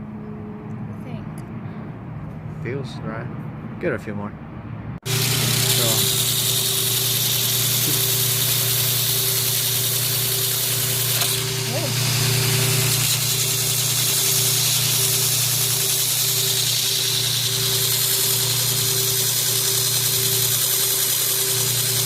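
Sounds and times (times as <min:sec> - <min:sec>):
motor hum with hiss: 0:05.0 - 0:22.0.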